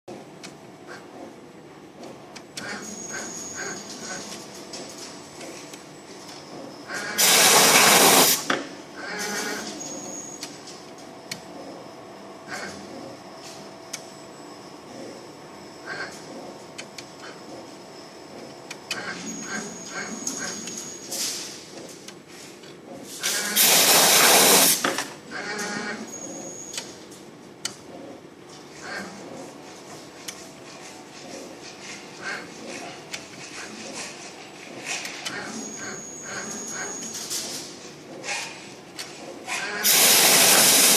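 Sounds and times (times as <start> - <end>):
loud hiss: 7.2 - 8.4, 23.6 - 24.8, 39.8 - 40.9.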